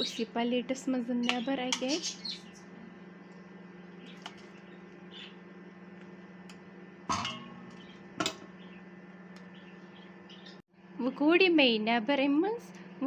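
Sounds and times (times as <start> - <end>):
steady low hum: 0.0 - 13.0
utensils clinking on cookware: 7.1 - 8.5.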